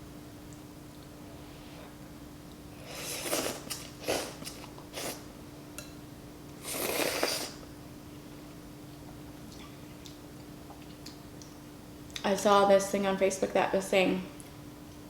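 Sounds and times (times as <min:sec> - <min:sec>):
faint steady hum: 0:00.0 - 0:15.0
slurping noodle soup: 0:02.8 - 0:05.3, 0:06.6 - 0:07.6.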